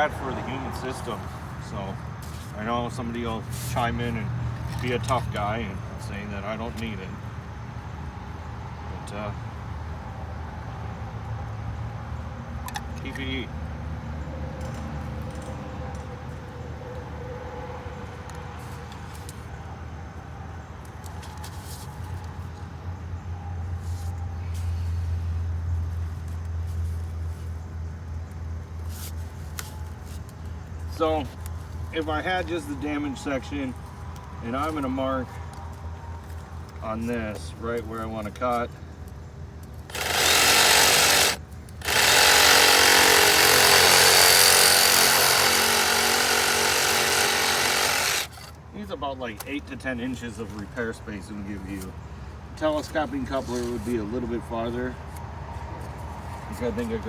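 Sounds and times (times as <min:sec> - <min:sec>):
vehicle engine rumble: 0:00.0 - 0:40.5
power saw cutting plastic pipe: 0:39.9 - 0:48.6.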